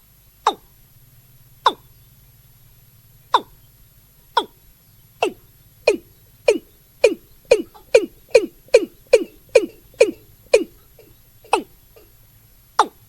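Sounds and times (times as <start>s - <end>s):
watercock calling: 0.4s - 0.8s, 1.6s - 2.0s, 3.3s - 3.7s, 4.3s - 12.2s, 12.8s - 13.0s.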